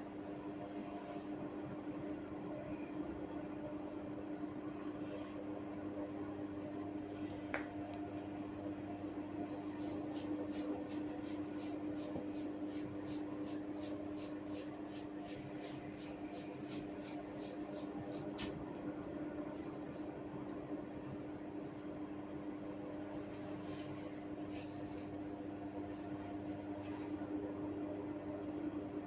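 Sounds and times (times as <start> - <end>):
hair crackling: 9.8 - 18.6.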